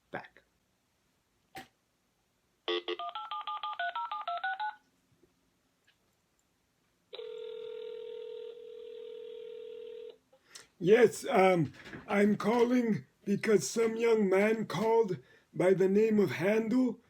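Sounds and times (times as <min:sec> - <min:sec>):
telephone ringing tone: 0:02.7 - 0:04.8, 0:07.1 - 0:10.2.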